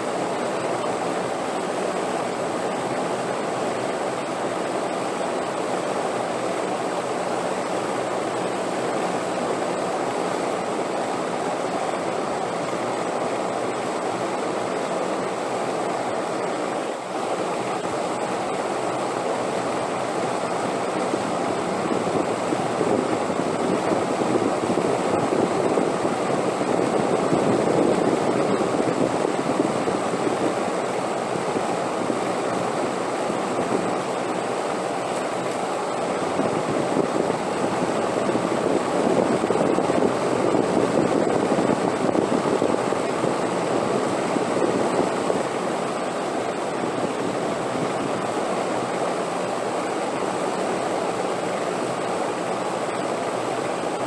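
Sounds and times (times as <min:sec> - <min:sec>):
rushing wind: 0:17.5 - 0:54.0.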